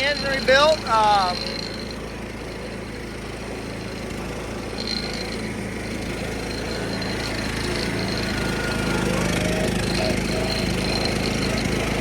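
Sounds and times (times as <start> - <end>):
riding lawn tractor engine: 0.0 - 12.0.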